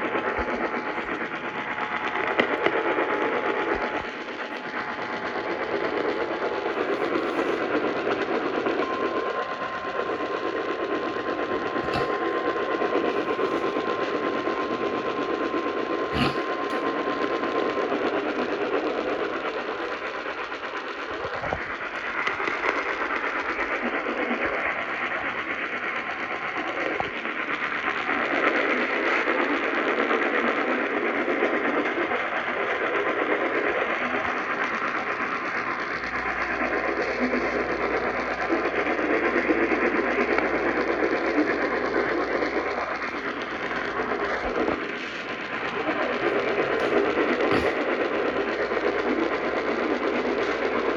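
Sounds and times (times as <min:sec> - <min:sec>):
radio static hiss: 0:00.0 - 0:17.2, 0:40.4 - 0:50.8.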